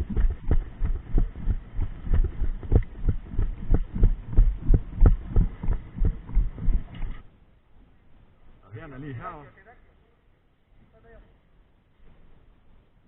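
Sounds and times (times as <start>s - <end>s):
running footfall thuds: 0.0s - 7.2s.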